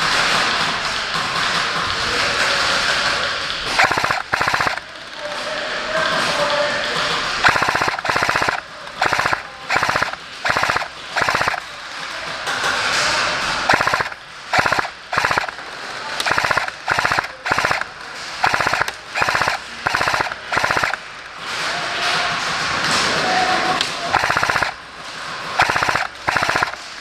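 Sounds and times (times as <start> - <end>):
airsoft gun firing bursts: 3.6 - 5.0, 7.3 - 11.7, 13.6 - 21.3, 24.0 - 24.8, 25.6 - 27.0.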